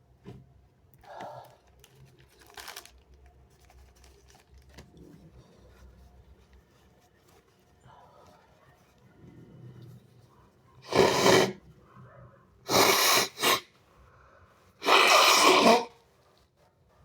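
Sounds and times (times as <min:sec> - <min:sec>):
person sneezing wetly: 0:10.8 - 0:11.6, 0:12.7 - 0:13.7, 0:14.8 - 0:15.9.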